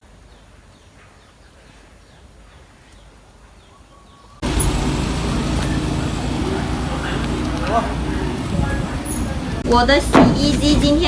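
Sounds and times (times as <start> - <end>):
vehicle engine running: 4.4 - 11.0.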